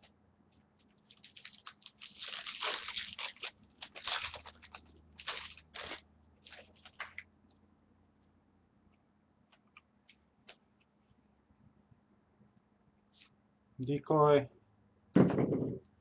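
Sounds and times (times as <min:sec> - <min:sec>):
wrapper tearing and crinkling: 0:00.8 - 0:07.2.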